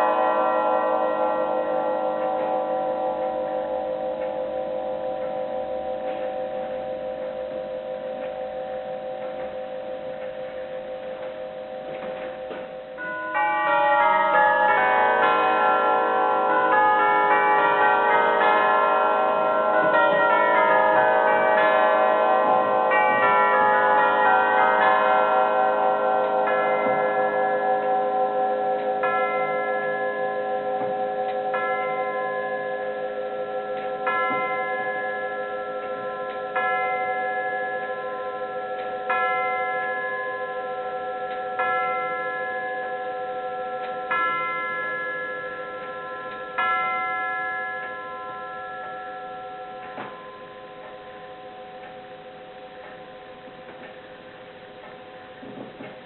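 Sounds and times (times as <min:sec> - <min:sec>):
grandfather clock bells striking: 0:00.0 - 0:56.0.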